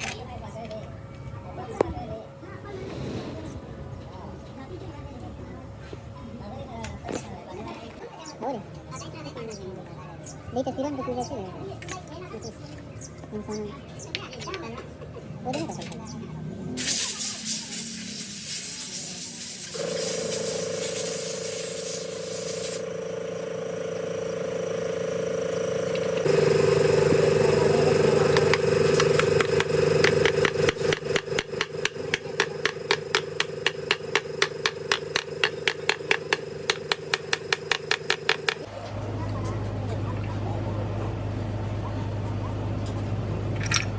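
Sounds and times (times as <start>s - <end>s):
machine motor humming: 19.7s - 39.4s
rapid even knocking: 28.4s - 38.7s.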